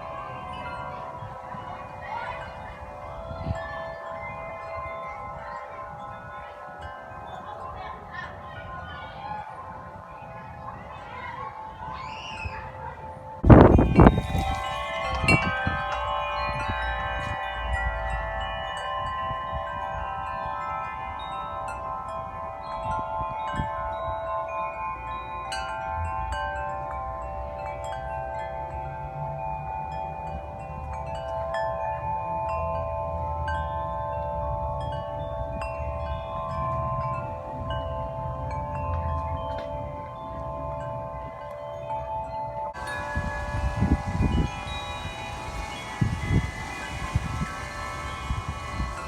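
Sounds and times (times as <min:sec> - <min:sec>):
gusty wind: 0:00.0 - 0:24.7, 0:42.7 - 0:49.0
wind chimes ringing: 0:00.0 - 0:49.0.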